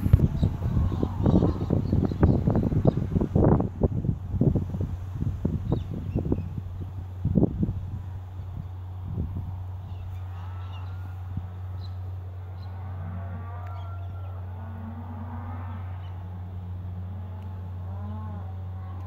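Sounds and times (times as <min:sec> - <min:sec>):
steady low hum: 0:00.0 - 0:19.0
cattle mooing: 0:10.2 - 0:11.3, 0:12.6 - 0:16.4, 0:17.0 - 0:19.0.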